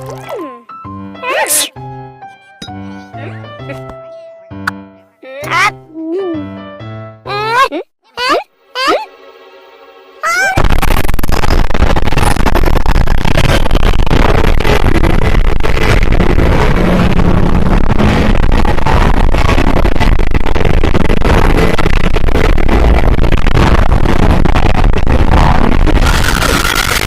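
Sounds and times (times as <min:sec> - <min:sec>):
loud distorted noise: 0:09.1 - 0:27.0
deep rumble: 0:10.0 - 0:27.0.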